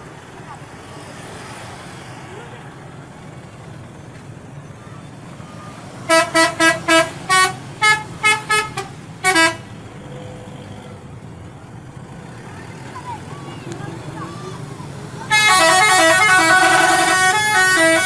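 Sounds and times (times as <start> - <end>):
traffic rumble: 0.0 - 18.0
bus musical horn tune: 6.0 - 9.8, 15.3 - 18.0.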